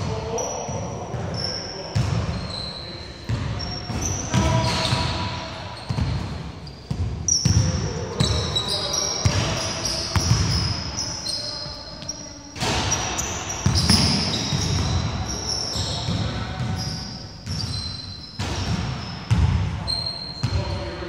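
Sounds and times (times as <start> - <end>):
sneakers squeaking: 0.0 - 21.0
basketball bouncing on wooden court: 1.9 - 2.4, 3.3 - 5.2, 5.8 - 8.4, 9.2 - 10.8, 12.6 - 19.7.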